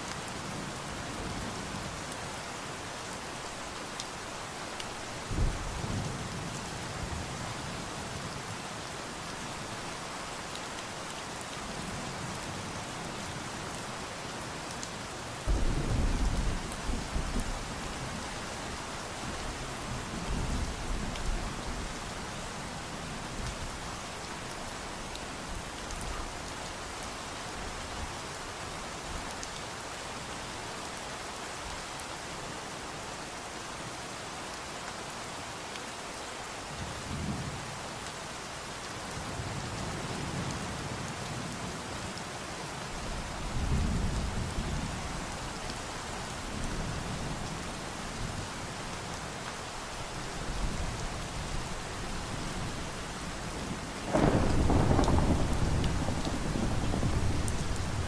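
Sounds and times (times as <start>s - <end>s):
steady rain falling: 0.0s - 58.0s
thunder rumbling: 54.1s - 58.0s.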